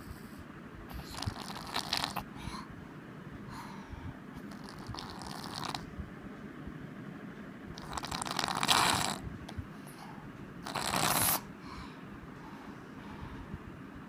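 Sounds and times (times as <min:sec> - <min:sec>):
toddler snoring: 0:00.9 - 0:02.7, 0:04.4 - 0:05.9, 0:07.8 - 0:09.2, 0:09.8 - 0:11.5.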